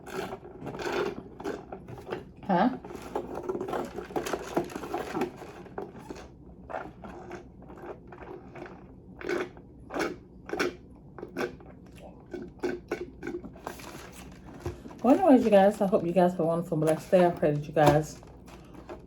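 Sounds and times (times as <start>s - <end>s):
wet mouth chewing and smacking: 6.7s - 13.8s.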